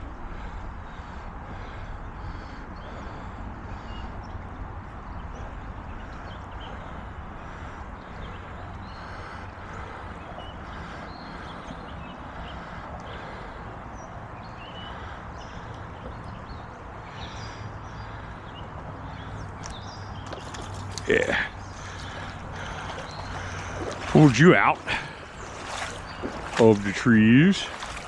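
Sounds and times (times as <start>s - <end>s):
creek water rushing: 20.2s - 28.0s.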